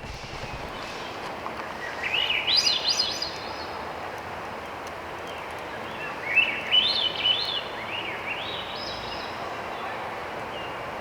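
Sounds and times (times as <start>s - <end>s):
steady rushing background noise: 0.0s - 4.4s.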